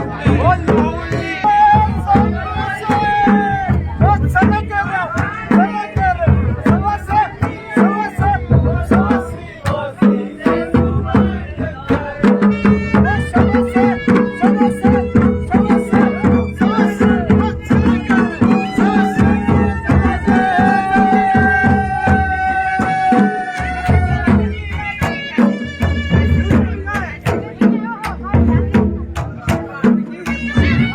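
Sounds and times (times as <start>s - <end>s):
fast drum beat: 0.0s - 30.9s
folk dance melody: 12.5s - 27.6s.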